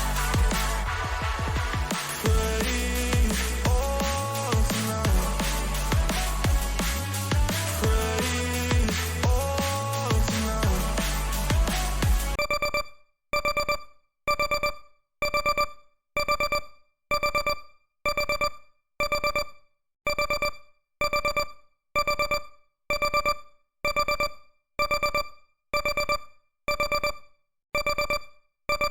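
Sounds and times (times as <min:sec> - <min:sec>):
timer alarm beeps: 0:12.4 - 0:28.9.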